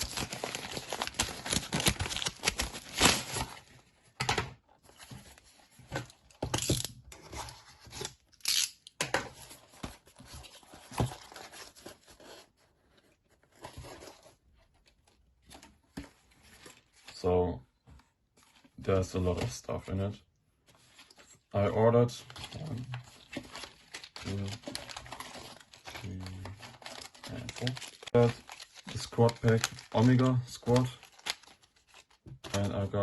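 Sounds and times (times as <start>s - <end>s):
packaging ripping and crinkling: 0.0s - 3.6s, 22.5s - 32.2s.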